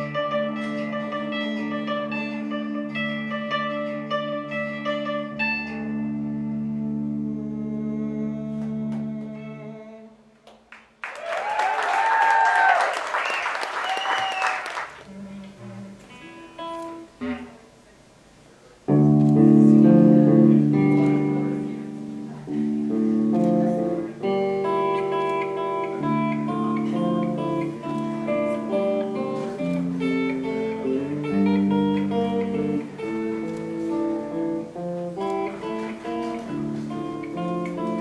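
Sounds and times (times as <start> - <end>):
live rock band with guitars: 0.0 - 7.4, 18.8 - 38.0.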